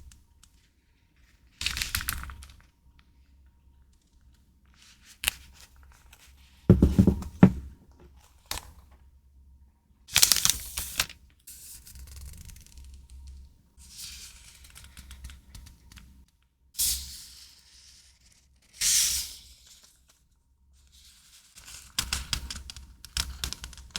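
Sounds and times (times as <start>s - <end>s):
sharp knocks and clicks: 6.7s - 8.1s.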